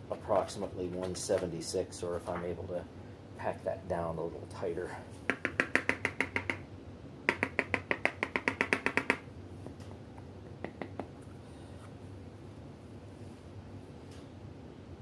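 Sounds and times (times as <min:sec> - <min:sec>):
container tapping on hard surface: 0:07.3 - 0:09.2.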